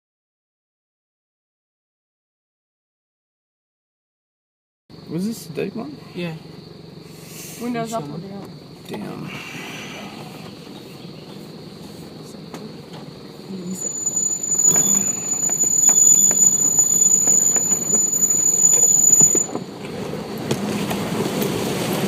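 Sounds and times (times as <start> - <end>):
vehicle engine: 4.9 - 22.0
high-pitched squeal: 13.5 - 19.8.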